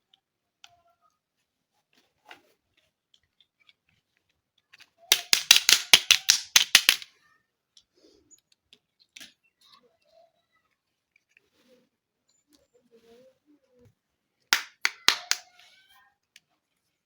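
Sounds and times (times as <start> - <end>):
plastic toy pieces clicking: 5.1 - 7.1, 14.6 - 15.4.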